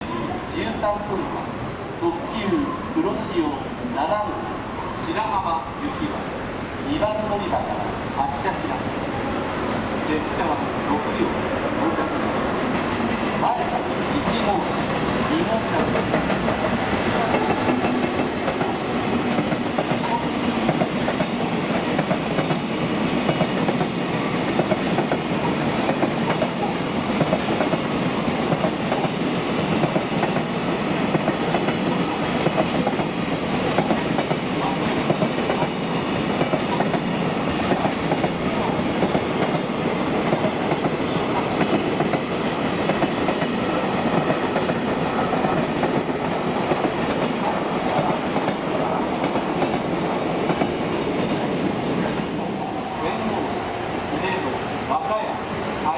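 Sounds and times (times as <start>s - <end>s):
freight train wheels clattering: 12.6s - 52.6s.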